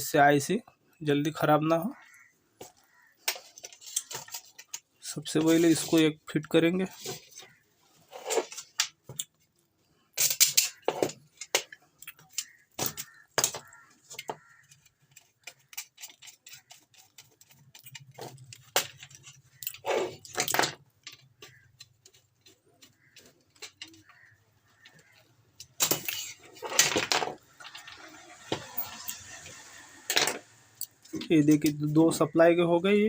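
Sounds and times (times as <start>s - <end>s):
rasping scrapes: 14.6s - 20.3s.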